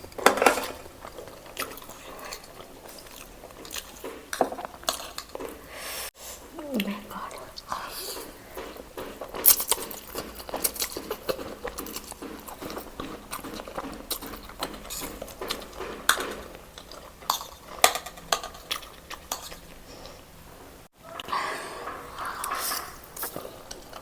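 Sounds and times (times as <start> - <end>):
chewing and biting: 0.8 - 5.7, 6.8 - 20.3, 22.1 - 24.0
utensils clicking against dishes: 8.0 - 19.7.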